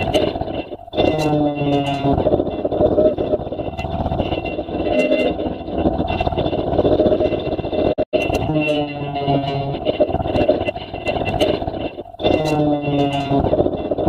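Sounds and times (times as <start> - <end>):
distorted guitar music: 0.0 - 14.0.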